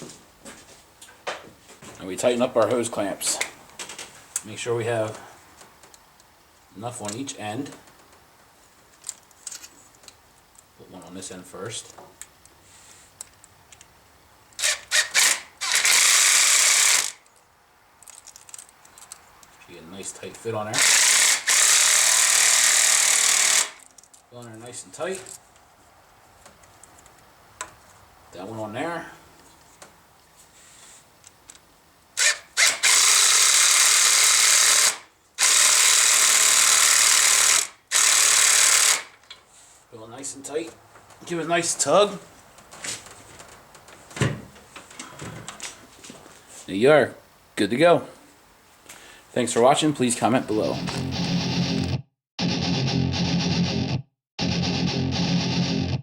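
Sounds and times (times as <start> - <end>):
power drill spinning: 14.6 - 17.2, 20.7 - 23.9, 32.2 - 39.2.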